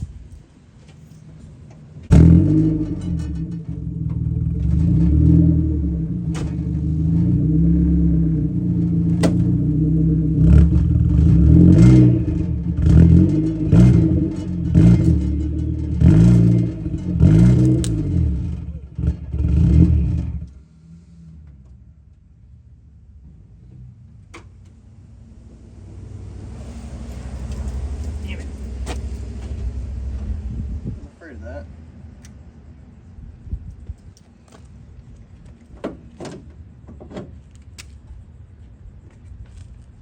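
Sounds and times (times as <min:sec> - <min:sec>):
car engine revving: 0:02.1 - 0:21.5, 0:24.9 - 0:31.6
sharp clanks: 0:11.8 - 0:19.2.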